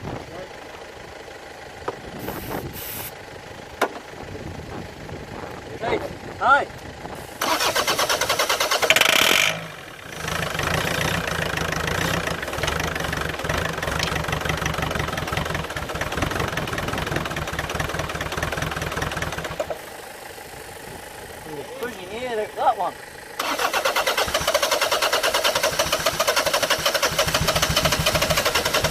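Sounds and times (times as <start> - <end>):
diesel engine running: 0.0 - 28.9
diesel engine starter cranking: 7.1 - 28.9.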